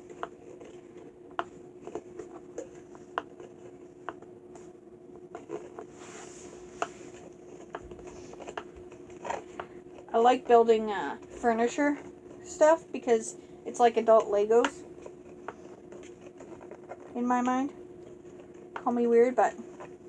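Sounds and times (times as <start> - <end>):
soft rustle: 5.4 - 12.7.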